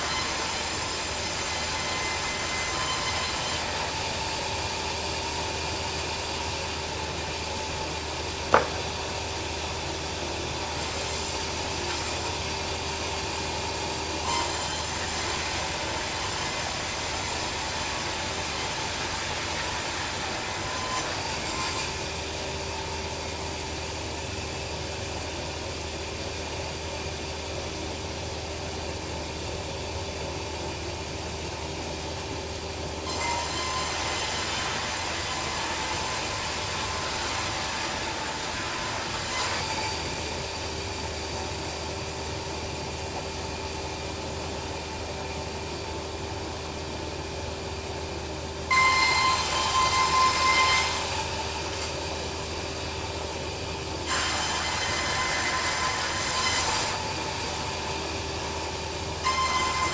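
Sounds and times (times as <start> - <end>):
bandsaw sawmill cutting log: 0.0 - 24.6, 32.4 - 59.9
sharp knock: 8.5 - 8.8.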